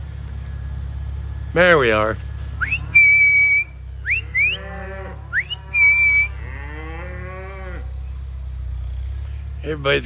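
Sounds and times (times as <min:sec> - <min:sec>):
person whistling: 0:02.6 - 0:04.6, 0:05.4 - 0:06.4
cows mooing: 0:02.6 - 0:08.0.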